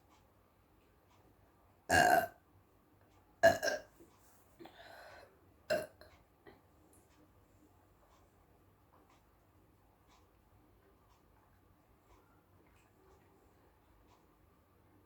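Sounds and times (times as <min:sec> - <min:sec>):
woman burping: 0:01.9 - 0:02.3, 0:03.4 - 0:03.9, 0:05.7 - 0:06.0.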